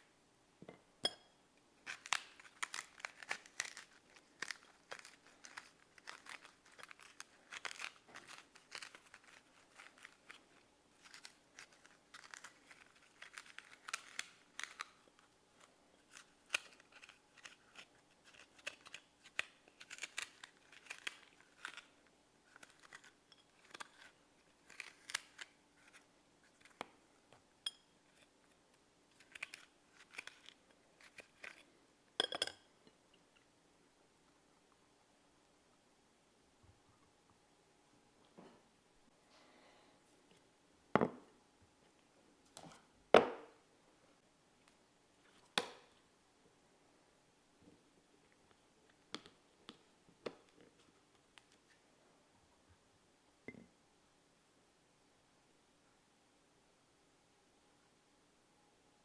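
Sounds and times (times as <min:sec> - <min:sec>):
knife cutting and scraping fruit: 0:01.8 - 0:31.8.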